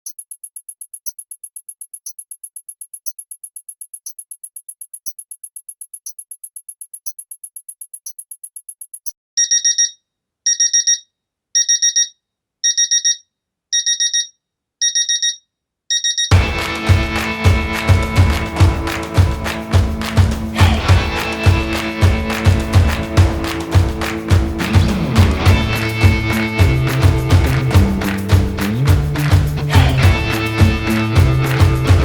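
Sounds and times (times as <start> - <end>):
clock ticking: 0.0 - 11.0, 11.6 - 13.2, 13.8 - 16.5
alarm clock beeping: 0.0 - 16.4
music: 16.3 - 32.0.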